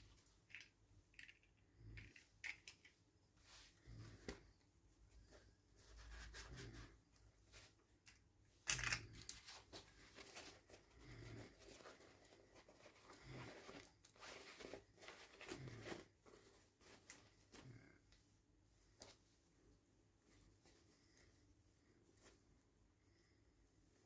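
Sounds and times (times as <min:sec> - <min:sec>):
toy packaging rustling: 0:00.1 - 0:02.9, 0:08.0 - 0:17.5.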